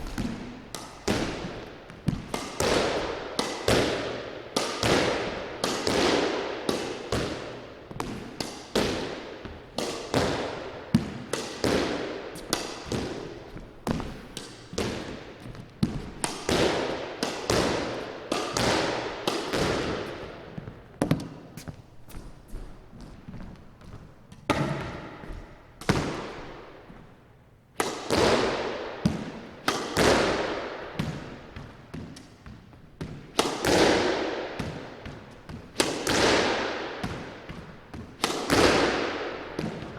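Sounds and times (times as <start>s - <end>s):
ball rebounding off court walls: 0.0s - 21.5s
squash ball hit with racket: 0.0s - 21.6s, 24.4s - 26.8s, 27.8s - 39.9s.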